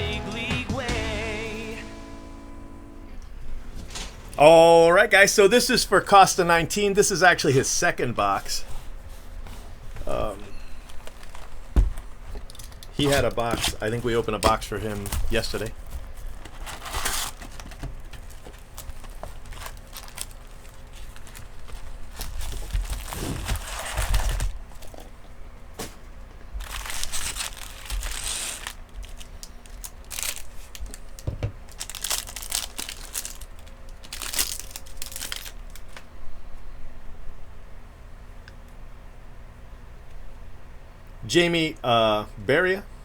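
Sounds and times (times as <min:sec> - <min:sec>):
foil wrapper crinkling and tearing: 0:10.1 - 0:25.1, 0:26.6 - 0:36.1.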